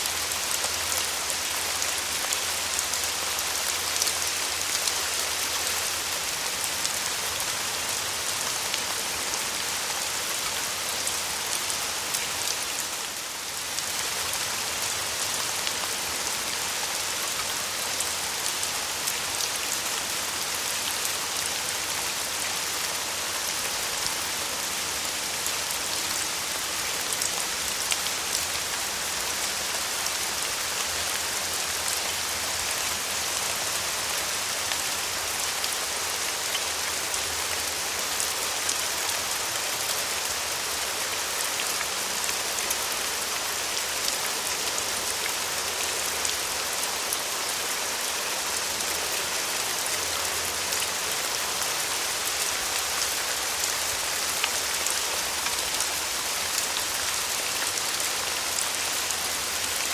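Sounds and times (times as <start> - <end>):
rain falling on a surface: 0.0 - 59.9.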